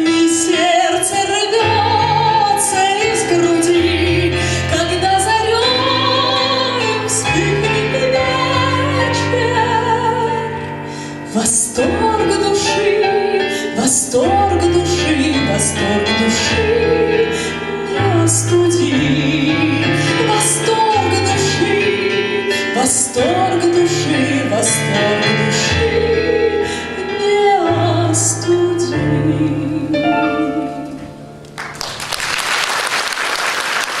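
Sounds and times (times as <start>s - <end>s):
grand piano accompaniment: 0.0s - 34.0s
applause: 31.5s - 34.0s.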